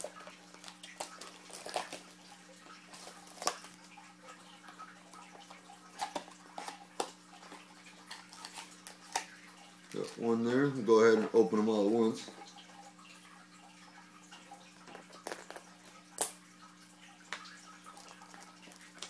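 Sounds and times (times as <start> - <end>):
cardboard packaging crackles: 0.0 - 3.8.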